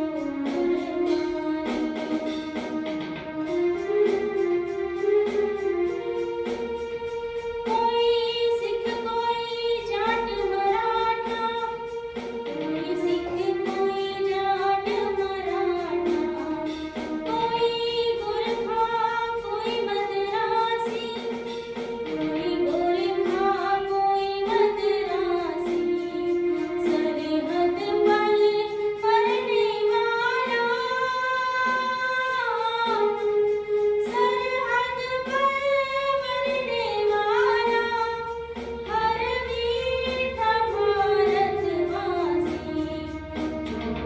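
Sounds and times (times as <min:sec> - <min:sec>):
instrumental accompaniment: 0:00.0 - 0:44.0
woman singing: 0:07.7 - 0:11.8, 0:12.5 - 0:21.4, 0:22.1 - 0:33.2, 0:34.0 - 0:43.4.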